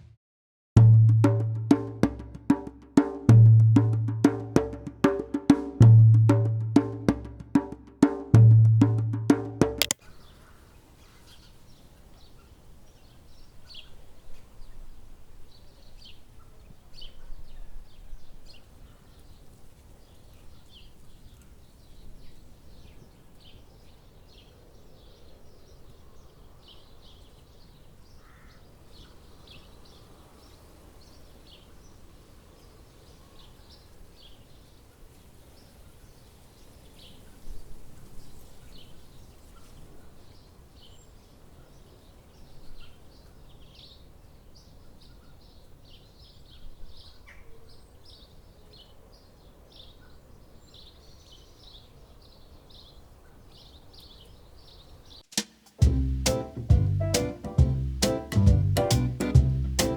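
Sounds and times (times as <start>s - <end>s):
birds chirping: 50.8s - 59.9s.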